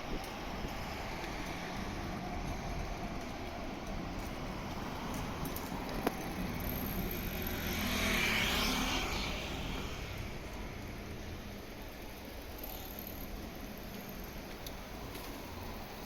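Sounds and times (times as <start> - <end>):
street noise: 0.0 - 16.0
car passing by: 0.6 - 13.2.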